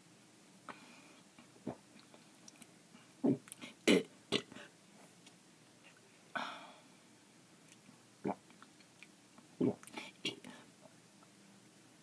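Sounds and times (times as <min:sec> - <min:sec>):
person gulping: 0:01.7 - 0:02.6, 0:08.2 - 0:08.7, 0:09.6 - 0:10.5.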